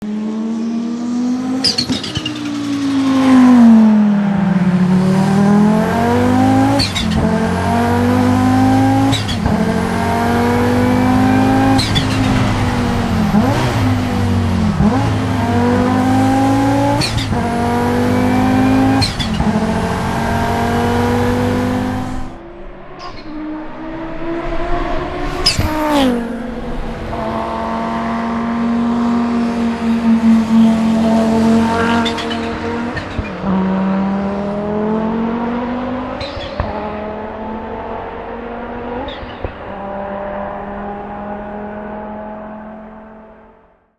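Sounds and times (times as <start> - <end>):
turbo engine accelerating hard: 0.0 - 43.6
sharp engine burst: 4.6 - 22.4.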